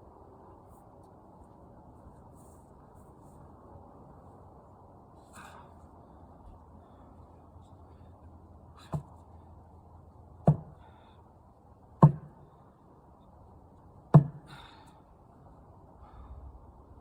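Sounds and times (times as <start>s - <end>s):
heavy blows on wood: 8.8s - 9.2s, 10.4s - 11.0s, 12.0s - 12.4s, 14.1s - 14.7s.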